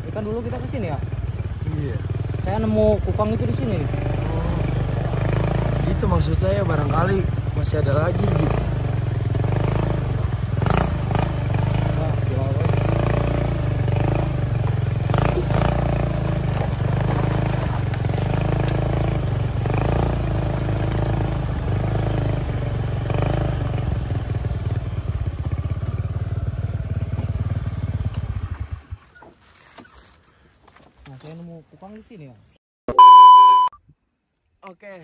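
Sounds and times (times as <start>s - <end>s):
motorcycle engine idling: 0.0s - 12.9s, 20.2s - 29.2s.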